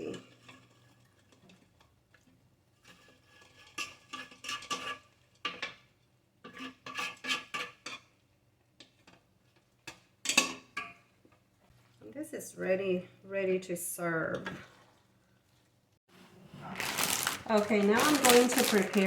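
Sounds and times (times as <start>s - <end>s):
metal utensils clinking on a pan: 10.2s - 11.0s.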